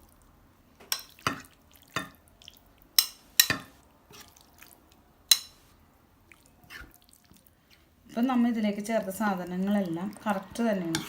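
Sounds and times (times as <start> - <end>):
wet squelching in marinade: 4.1 - 5.1, 6.2 - 11.0.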